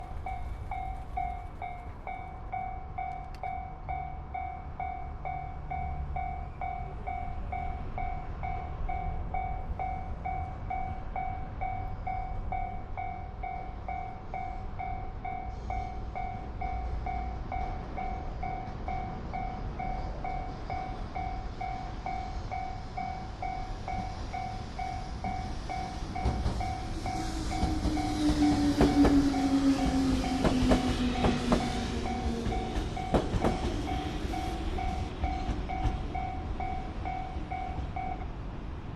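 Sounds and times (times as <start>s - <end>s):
train passing: 0.0s - 38.9s
train wheels clicking over rail joints: 15.6s - 38.3s.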